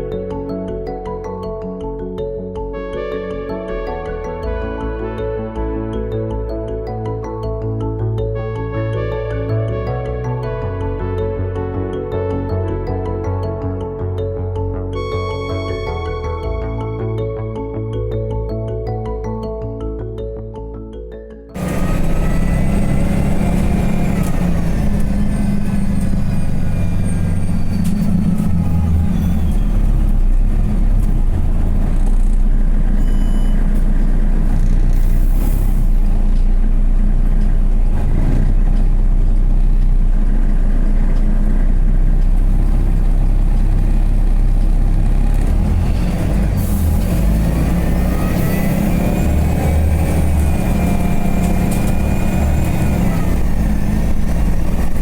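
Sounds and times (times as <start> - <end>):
bus engine accelerating: 15.0 - 17.6, 21.6 - 55.0
road noise: 21.6 - 55.0.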